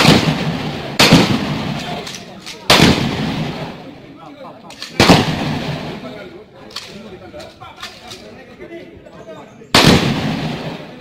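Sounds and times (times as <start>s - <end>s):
gunshots echoing: 0.0s - 3.9s, 4.7s - 7.0s, 9.7s - 11.0s.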